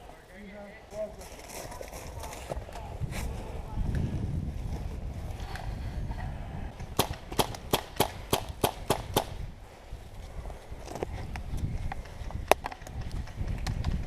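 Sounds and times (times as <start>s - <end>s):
airsoft gun shots: 7.0s - 9.4s.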